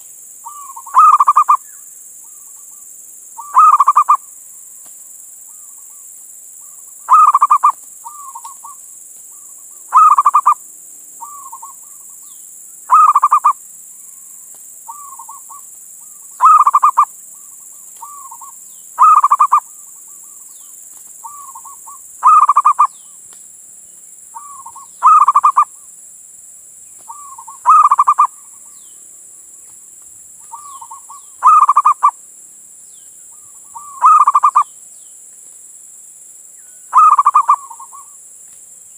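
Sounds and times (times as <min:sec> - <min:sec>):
dove cooing: 0:00.4 - 0:01.6, 0:03.4 - 0:04.3, 0:07.1 - 0:10.6, 0:11.2 - 0:12.2, 0:12.9 - 0:13.6, 0:14.9 - 0:20.4, 0:21.2 - 0:23.0, 0:24.4 - 0:25.8, 0:27.1 - 0:28.8, 0:30.4 - 0:32.2, 0:33.4 - 0:34.7, 0:36.9 - 0:38.2.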